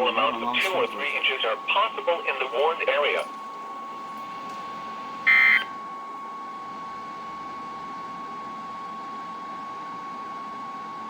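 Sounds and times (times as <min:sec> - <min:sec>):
radio static hiss: 0:00.0 - 0:03.4.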